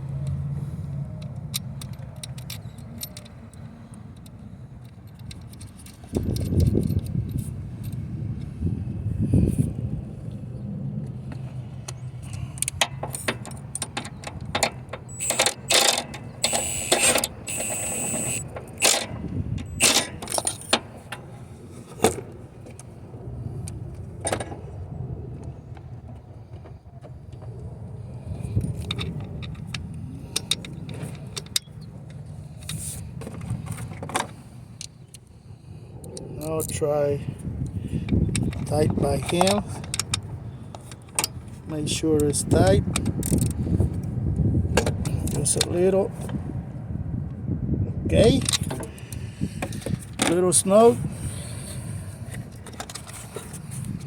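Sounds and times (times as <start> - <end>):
metal tools clinking: 13.1 - 20.8.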